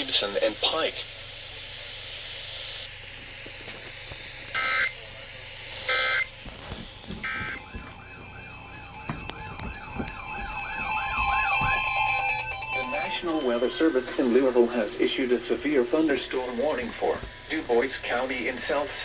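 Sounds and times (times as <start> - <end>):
digital data squawk bursts: 4.6 - 5.0, 5.9 - 6.3, 11.8 - 14.0
warbling siren-like tone: 5.9 - 17.1
steady tone: 7.1 - 19.0.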